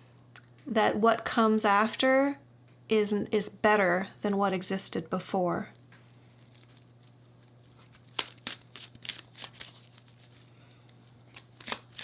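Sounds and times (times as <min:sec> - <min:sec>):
faint steady hum: 0:00.0 - 0:12.0
cards shuffling: 0:06.4 - 0:12.0.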